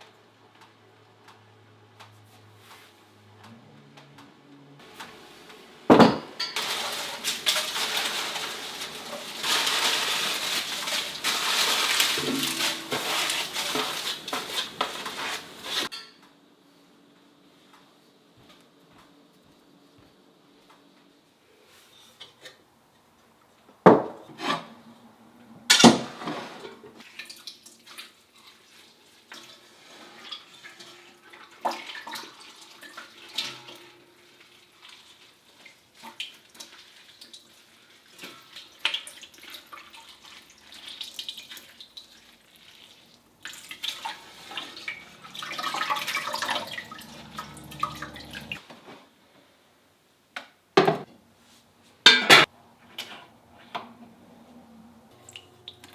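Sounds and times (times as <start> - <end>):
pots and utensils clinking: 4.8 - 16.2, 25.7 - 27.0, 29.3 - 34.7, 43.5 - 48.6, 52.1 - 53.2
water running and splashing: 6.4 - 15.9, 27.0 - 48.6.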